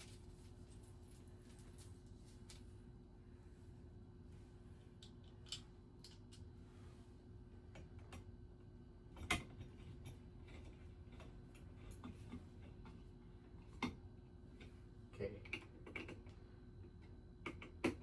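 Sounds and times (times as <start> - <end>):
faint steady hum: 0.0 - 18.0
hardware clicks and taps: 15.4 - 18.0.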